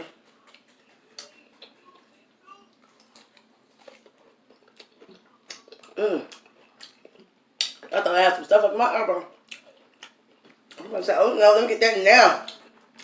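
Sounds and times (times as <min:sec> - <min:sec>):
mouth clicks and smacks: 0:04.7 - 0:07.9.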